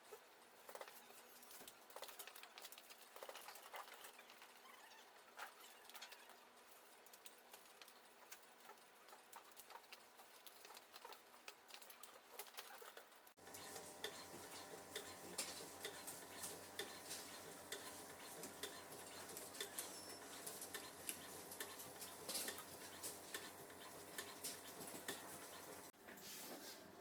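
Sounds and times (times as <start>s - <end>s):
steady hum: 13.4s - 26.0s.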